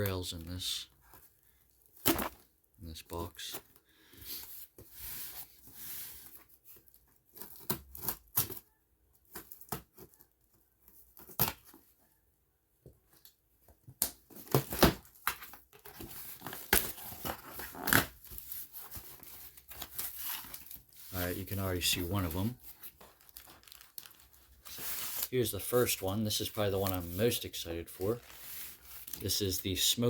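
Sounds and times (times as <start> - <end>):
packing material crinkling: 16.4 - 29.6.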